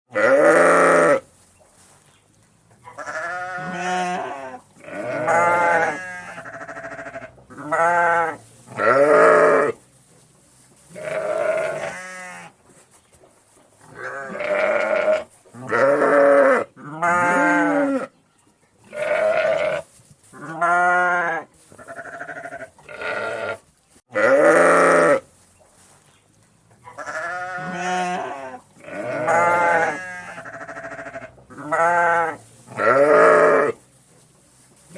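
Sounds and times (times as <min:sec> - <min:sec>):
sheep baaing: 0:00.1 - 0:01.2, 0:02.9 - 0:09.8, 0:10.9 - 0:12.5, 0:14.0 - 0:18.1, 0:18.9 - 0:19.8, 0:20.4 - 0:25.2, 0:26.9 - 0:33.8.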